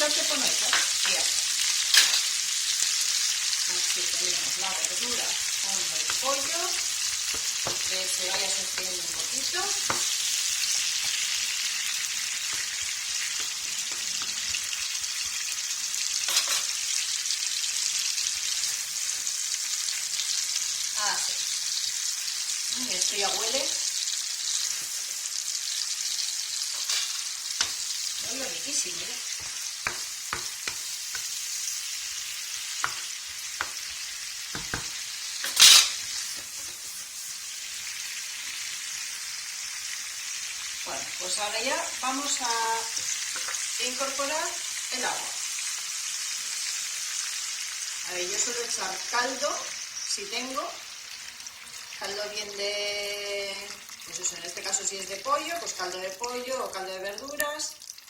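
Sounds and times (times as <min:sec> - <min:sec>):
food sizzling in hot oil: 0:00.0 - 0:58.0
utensil scraping pan: 0:29.3 - 0:36.8.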